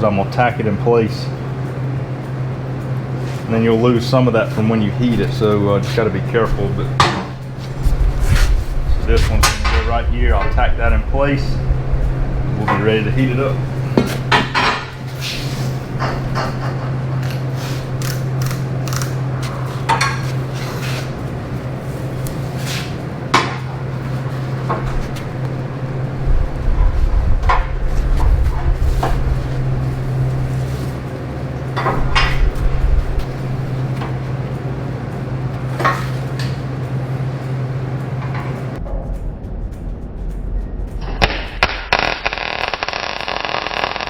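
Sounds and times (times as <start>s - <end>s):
welder buzzing hum: 4.9s - 35.4s, 41.0s - 44.0s.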